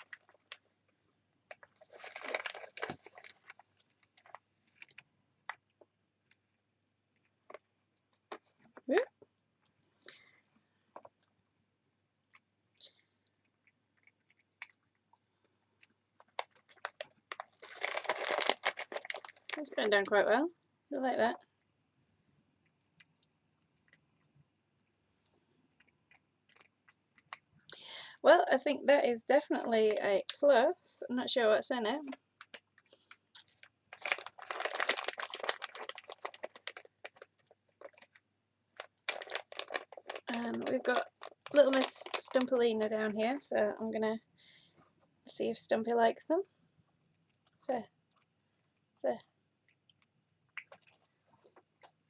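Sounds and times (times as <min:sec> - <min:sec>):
packaging crinkling: 0:00.0 - 0:00.7, 0:01.5 - 0:05.0, 0:16.2 - 0:20.0, 0:32.4 - 0:38.2, 0:38.8 - 0:43.3, 0:50.6 - 0:51.6
cat crunching treats: 0:01.5 - 0:05.0, 0:15.8 - 0:19.7, 0:32.4 - 0:38.2, 0:38.8 - 0:42.5, 0:50.0 - 0:52.0.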